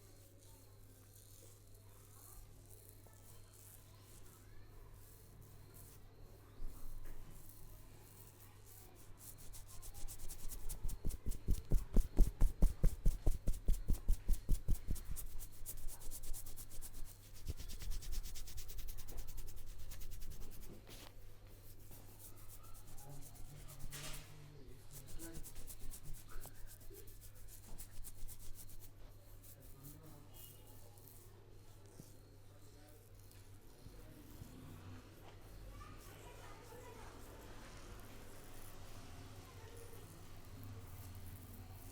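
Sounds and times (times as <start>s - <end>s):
hands rubbing scalp and hair: 8.1s - 31.3s.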